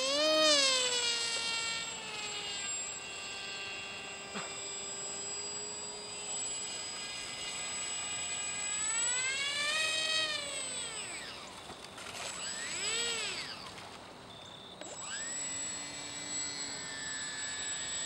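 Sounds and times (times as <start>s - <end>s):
model plane motor whining: 0.0s - 18.0s.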